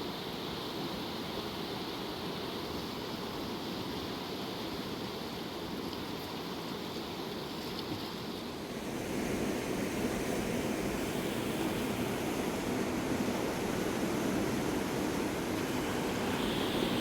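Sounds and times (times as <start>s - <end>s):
river rushing: 8.3s - 17.0s.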